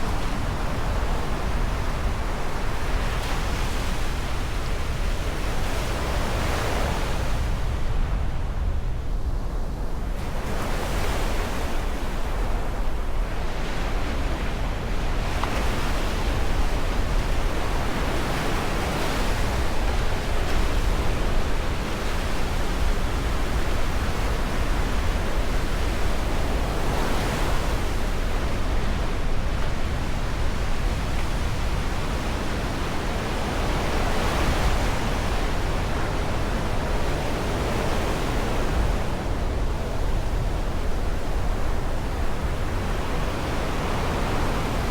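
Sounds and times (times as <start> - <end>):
wind rumbling on microphone: 0.0 - 44.9
waves breaking on shore: 10.2 - 44.9.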